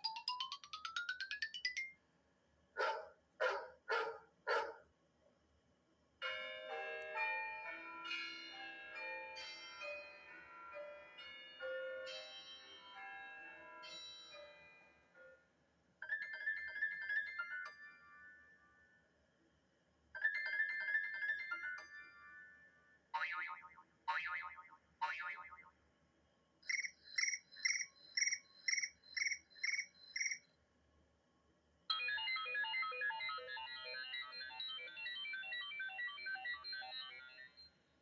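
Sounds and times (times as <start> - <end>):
bell and piano-like melody: 0.0 - 2.0, 6.2 - 19.0, 20.2 - 22.8.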